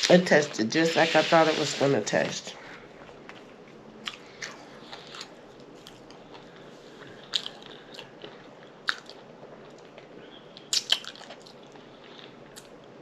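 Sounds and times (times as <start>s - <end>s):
low steady hiss: 0.0s - 13.0s
wet mouth clicks and smacks: 8.9s - 9.9s, 10.6s - 11.6s.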